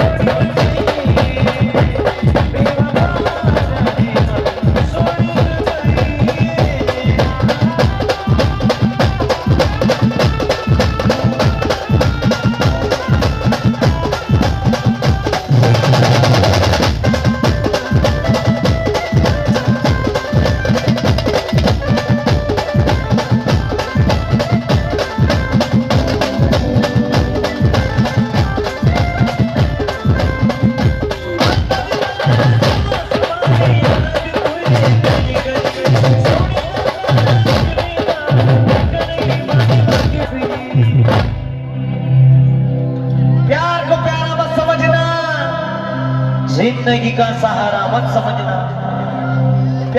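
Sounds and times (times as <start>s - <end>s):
fast drum beat: 0.0s - 41.4s
instrumental melody: 0.0s - 45.2s.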